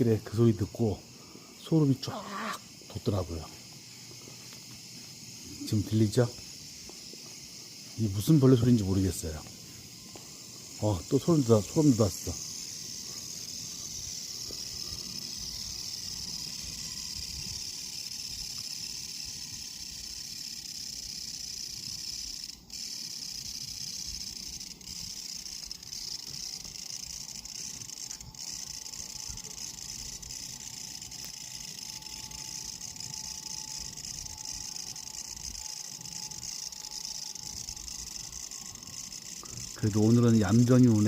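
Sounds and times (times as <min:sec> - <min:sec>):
insect buzzing trill: 0:00.0 - 0:41.0.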